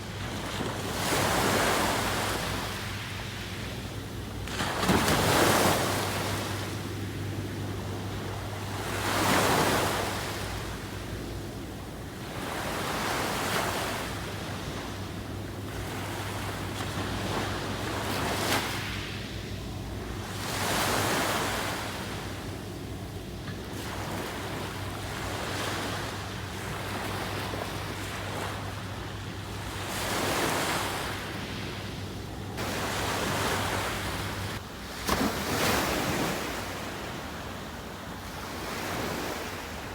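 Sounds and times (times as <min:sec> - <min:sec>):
ocean waves breaking on beach: 0:23.7 - 0:39.9.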